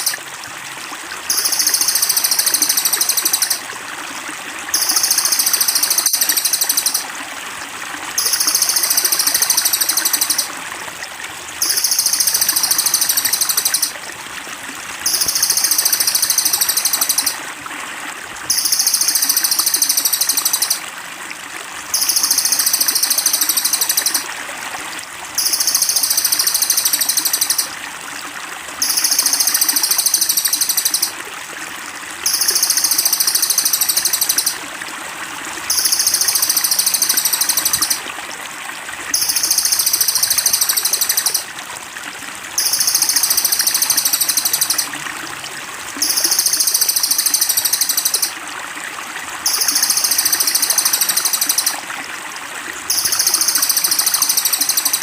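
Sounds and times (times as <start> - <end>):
water trickling: 0.0 - 55.0
songbird high-pitched rapid song: 1.3 - 3.6, 4.8 - 7.0, 8.2 - 10.5, 11.6 - 14.0, 15.1 - 17.4, 18.5 - 20.9, 22.0 - 24.2, 25.4 - 27.7, 28.8 - 31.2, 32.3 - 34.6, 42.6 - 44.9, 46.0 - 48.4, 49.5 - 51.8, 52.9 - 55.0.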